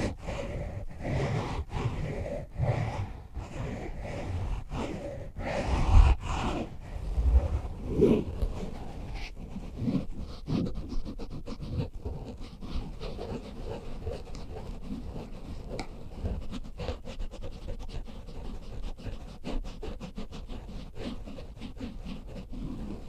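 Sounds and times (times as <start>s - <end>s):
microphone scratching: 0.0s - 11.1s.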